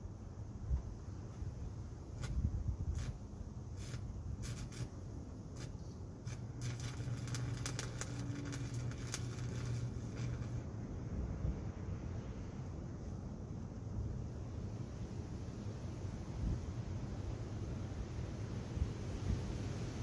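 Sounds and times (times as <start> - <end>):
low steady welder hum: 0.0 - 15.4
welding arc crackling: 2.2 - 10.7.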